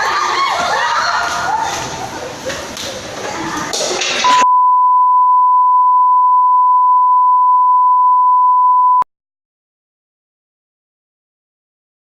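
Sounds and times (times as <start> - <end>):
children shouting: 0.0 - 2.4
electronic sine beep: 4.3 - 9.1.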